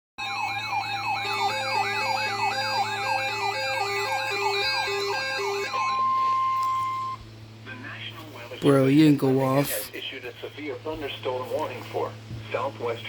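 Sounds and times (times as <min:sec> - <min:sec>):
fast wailing siren: 0:00.2 - 0:07.2
two-tone hi-lo siren: 0:00.2 - 0:07.2
high warbling siren tones: 0:00.4 - 0:07.2.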